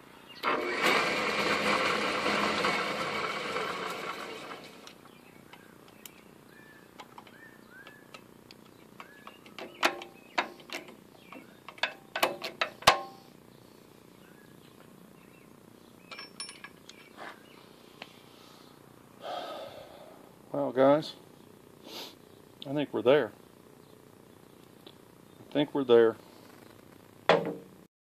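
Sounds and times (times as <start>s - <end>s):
metal clicks and knocks: 9.0s - 13.2s.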